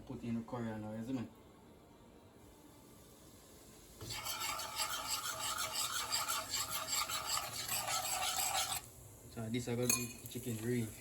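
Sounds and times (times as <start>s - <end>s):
spices sizzling in hot oil: 2.4s - 11.0s.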